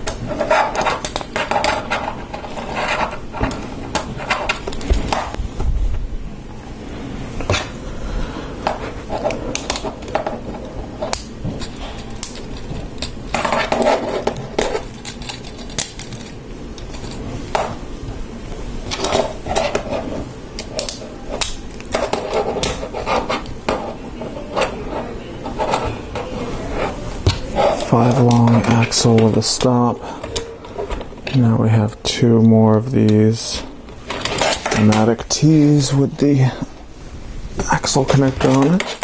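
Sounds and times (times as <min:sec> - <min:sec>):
plastic pieces clicking and rattling: 0:11.0 - 0:17.2.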